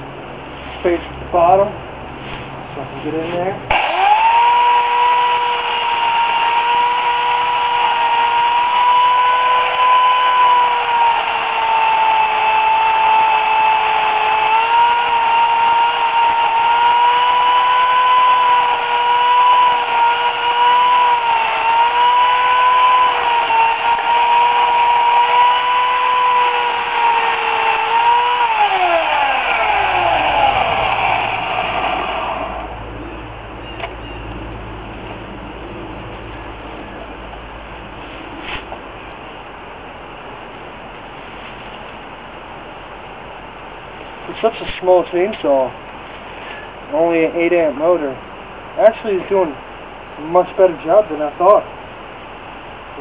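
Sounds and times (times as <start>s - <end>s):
electric chainsaw cutting wood: 3.7s - 32.8s.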